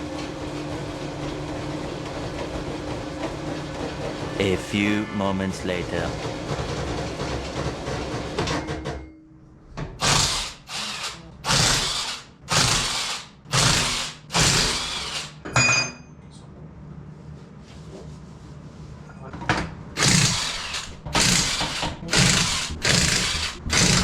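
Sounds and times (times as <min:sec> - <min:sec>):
power tool bursts: 0:10.0 - 0:15.4, 0:20.0 - 0:24.0
steady pitched sound: 0:20.2 - 0:24.0.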